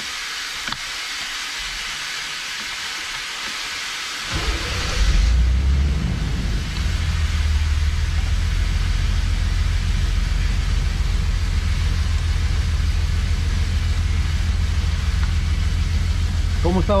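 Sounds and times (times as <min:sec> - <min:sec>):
car engine idling: 0:04.2 - 0:17.0.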